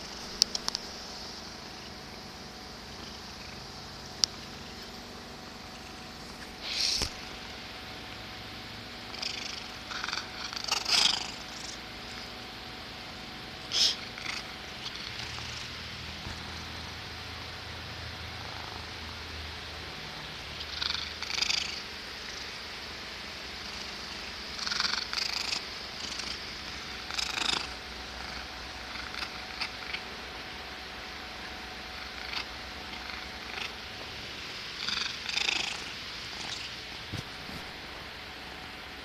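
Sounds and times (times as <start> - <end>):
cat purring: 2.9 - 5.0, 9.1 - 12.4, 13.7 - 16.9, 20.2 - 22.6, 23.5 - 30.2, 32.0 - 33.8, 34.8 - 37.9
noisy breath bursts: 6.6 - 7.1, 13.7 - 14.1.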